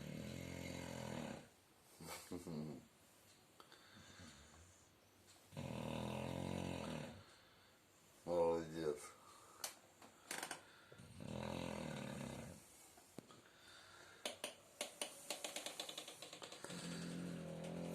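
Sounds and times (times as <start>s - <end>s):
dog snoring: 0.0s - 1.6s, 5.5s - 7.3s, 11.0s - 12.6s, 15.6s - 17.9s.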